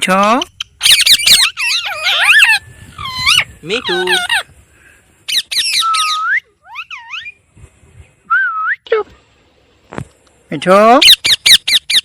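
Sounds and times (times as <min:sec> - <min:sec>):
parrot squawking: 0:00.3 - 0:04.5, 0:05.3 - 0:07.4, 0:11.0 - 0:12.0
parrot whistling: 0:05.3 - 0:07.4.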